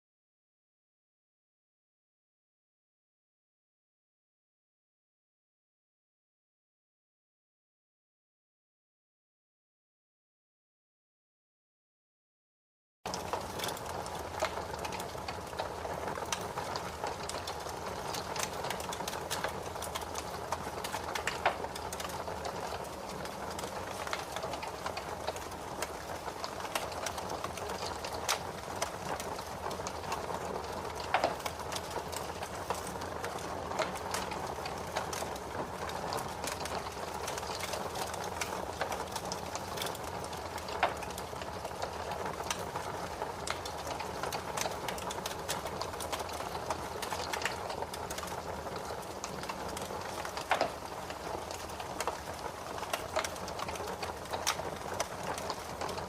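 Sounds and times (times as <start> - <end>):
fire crackling in a fireplace: 13.1 - 56.0.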